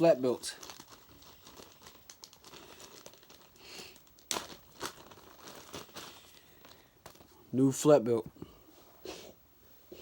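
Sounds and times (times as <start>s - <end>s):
wrapping crinkling and tearing: 0.0s - 7.4s.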